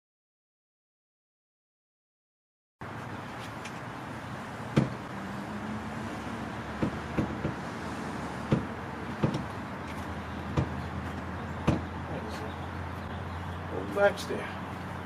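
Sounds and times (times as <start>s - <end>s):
sharp knocks and clunks: 4.7s - 5.0s, 6.7s - 7.7s, 8.4s - 12.0s.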